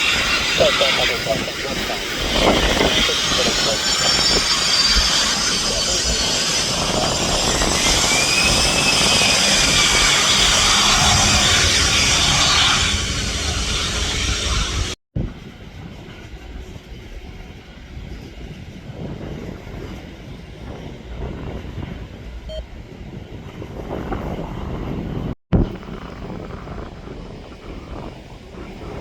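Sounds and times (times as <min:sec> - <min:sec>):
jet engines roaring and whining: 0:00.0 - 0:29.0
quiet rumble: 0:09.8 - 0:29.0.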